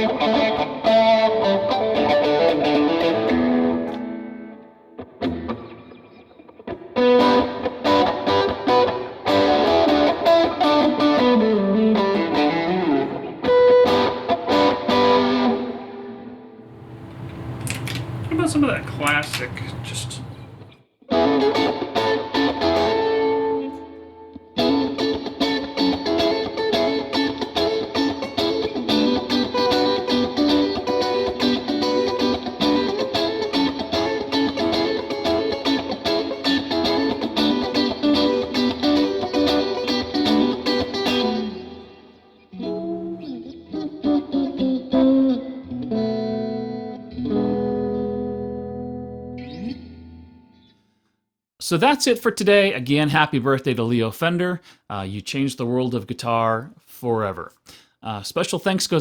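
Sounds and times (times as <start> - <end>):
distorted electric guitar: 24.6 - 49.8.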